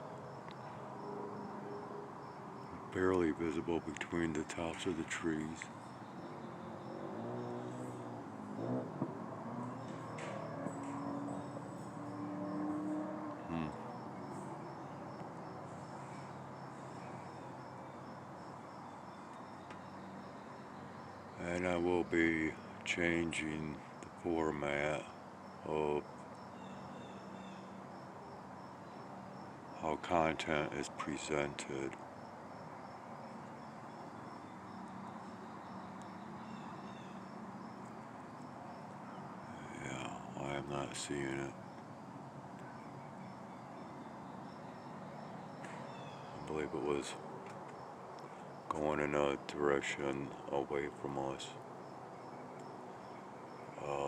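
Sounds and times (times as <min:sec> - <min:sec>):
steady low hum: 0:00.0 - 0:07.0
insect chirping: 0:00.0 - 0:54.0.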